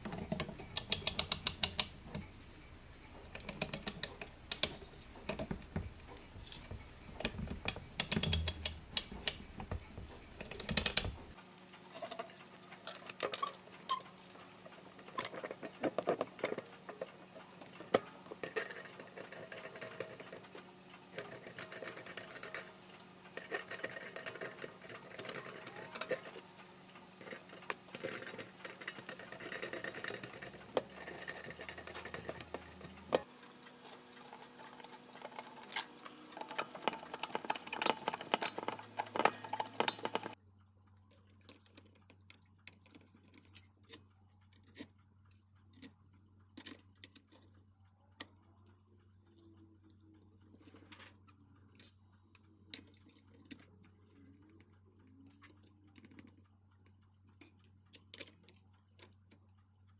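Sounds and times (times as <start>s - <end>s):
clock mechanism clicking and rattling: 0.0s - 40.4s.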